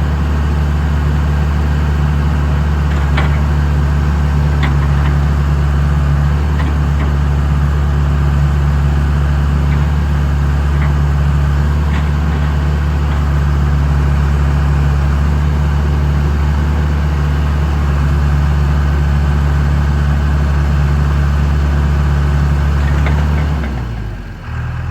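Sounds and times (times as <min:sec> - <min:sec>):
diesel engine running steadily: 0:00.0 - 0:24.9.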